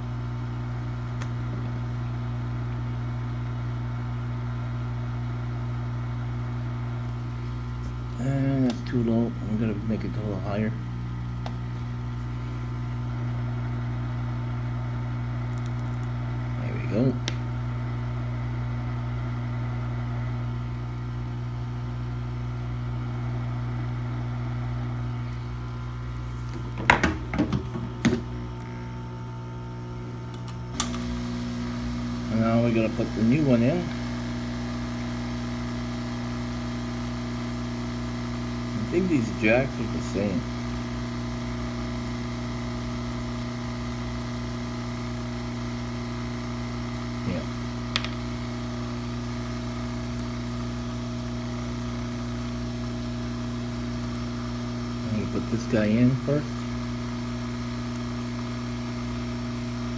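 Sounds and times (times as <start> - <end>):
hot-air station blowing: 0.0 - 15.4, 16.4 - 59.9
hot air tool blowing: 30.7 - 59.9.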